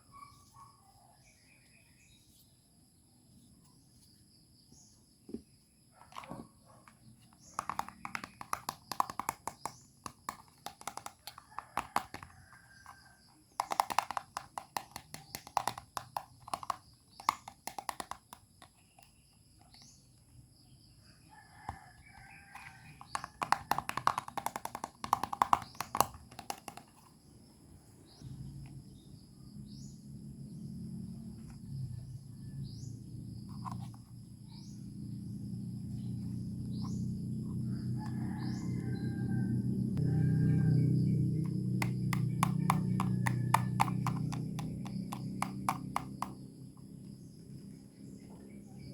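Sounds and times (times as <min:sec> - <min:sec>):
plastic toy pieces clicking: 0:07.5 - 0:19.1, 0:22.5 - 0:27.1, 0:41.8 - 0:46.4.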